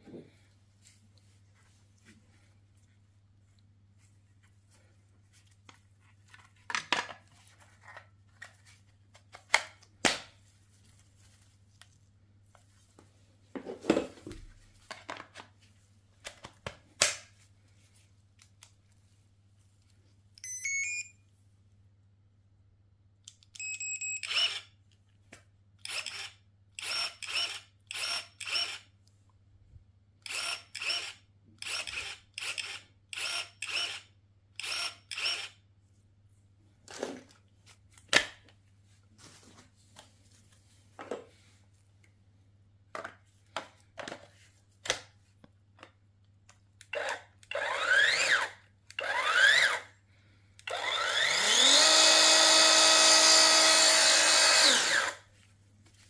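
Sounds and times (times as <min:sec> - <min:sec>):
electric chainsaw motor whirring: 0:25.8 - 0:28.8, 0:30.3 - 0:34.0, 0:34.6 - 0:35.6, 0:47.0 - 0:49.9, 0:50.6 - 0:55.2.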